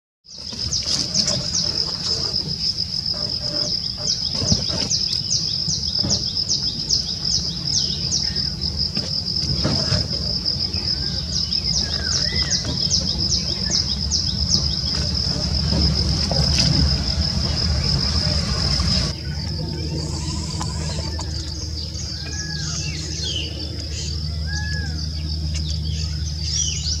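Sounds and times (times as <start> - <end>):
insect trilling: 0.6 - 25.7
low background rumble: 10.1 - 27.0
bird chirping: 10.7 - 15.9, 17.0 - 27.0.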